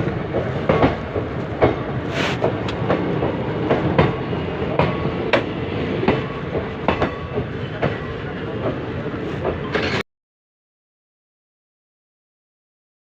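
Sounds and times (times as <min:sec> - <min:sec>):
train wheels clattering over rail joints: 0:00.0 - 0:10.0.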